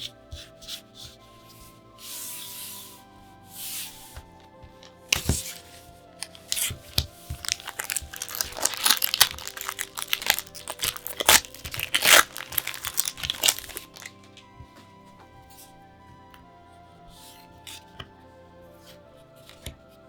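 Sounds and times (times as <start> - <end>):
card packaging tearing and crinkling: 4.2 - 14.4.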